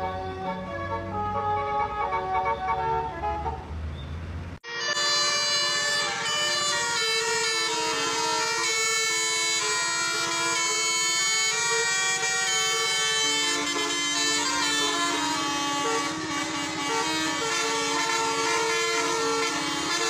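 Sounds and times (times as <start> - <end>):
multi-tone bus horn tune: 0.0 - 3.8, 4.6 - 20.0.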